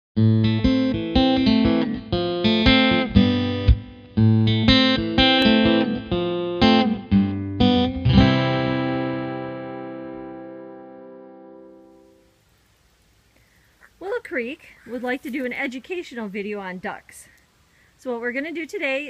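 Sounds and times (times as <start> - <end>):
guitar strumming chords: 0.2 - 12.4.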